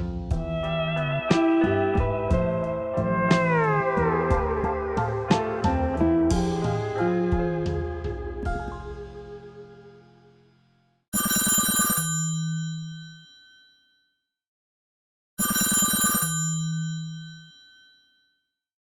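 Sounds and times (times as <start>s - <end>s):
telephone bell ringtone: 11.2s - 14.1s, 15.4s - 18.4s.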